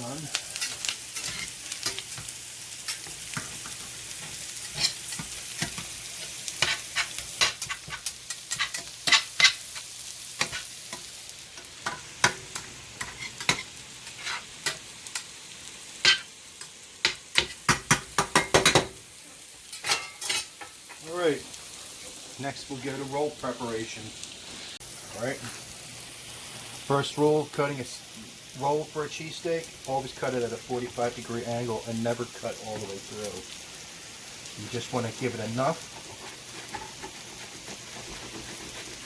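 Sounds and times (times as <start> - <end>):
meat and onions sizzling in a pan: 0.0 - 39.0
utensil clacking and scraping pan: 2.9 - 14.8, 19.7 - 21.1, 35.3 - 39.0.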